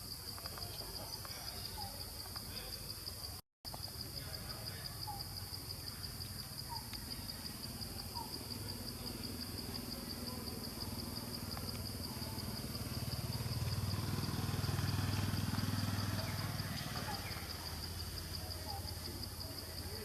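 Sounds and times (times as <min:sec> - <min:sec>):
pulsing insect trill: 0:00.0 - 0:20.0
small engine running: 0:10.1 - 0:18.9.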